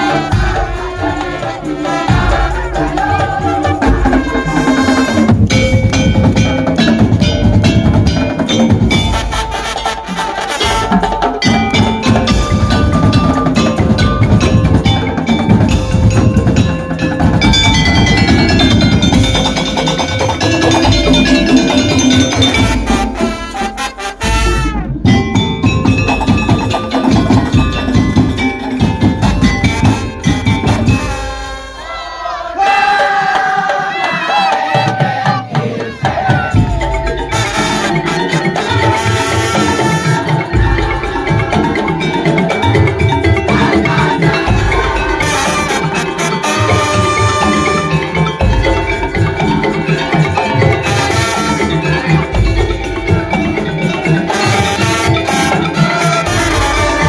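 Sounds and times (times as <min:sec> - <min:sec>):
low drums: 0:00.0 - 0:32.0, 0:35.0 - 0:57.0
percussion ensemble playing: 0:00.0 - 0:57.0
bending melodic line: 0:10.9 - 0:31.3
crowd shouting: 0:29.5 - 0:57.0.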